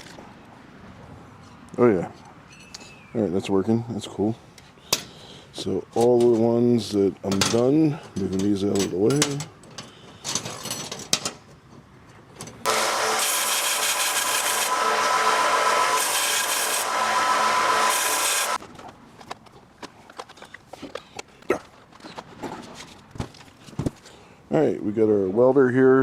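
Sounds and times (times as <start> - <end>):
belt sander grinding metal: 12.7 - 18.6.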